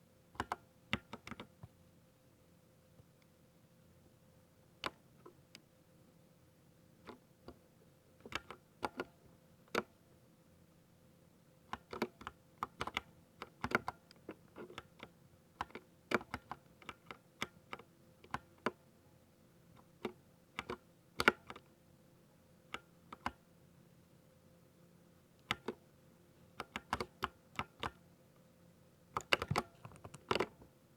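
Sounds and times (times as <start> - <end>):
mechanical keyboard typing: 26.6 - 28.0, 29.2 - 30.5.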